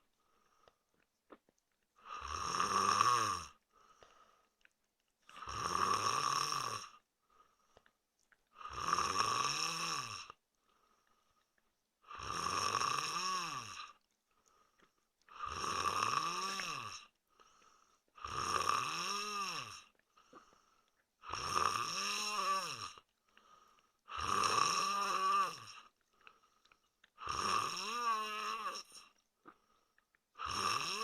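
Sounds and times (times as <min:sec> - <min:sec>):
man snoring: 0:02.0 - 0:03.6, 0:05.4 - 0:07.0, 0:08.6 - 0:10.4, 0:12.1 - 0:14.0, 0:15.3 - 0:17.1, 0:18.2 - 0:20.5, 0:21.2 - 0:23.0, 0:24.1 - 0:25.9, 0:27.2 - 0:29.1, 0:30.4 - 0:31.0.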